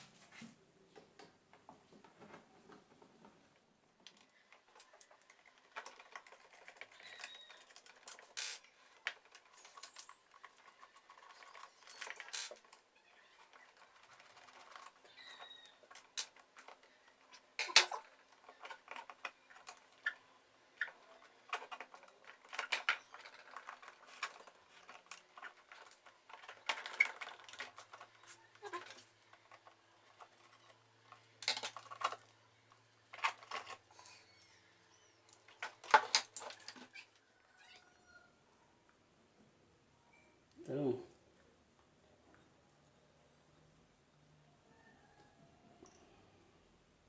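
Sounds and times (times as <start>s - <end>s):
plastic parts clicking and knocking: 4.0s - 37.2s.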